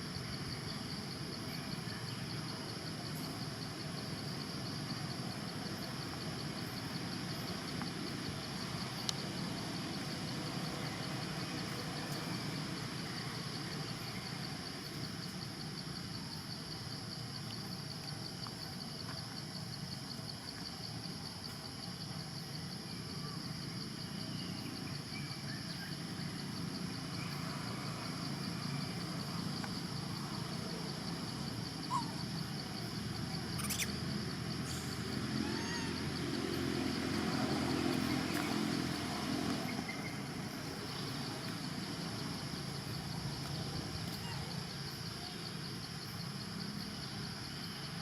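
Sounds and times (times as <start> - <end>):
high pulsing insect drone: 0.0 - 48.0.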